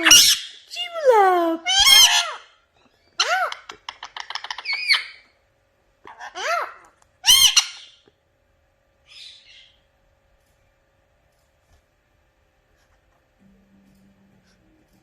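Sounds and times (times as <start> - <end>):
parrot squawking and chattering: 0.0 - 5.4, 6.0 - 8.0.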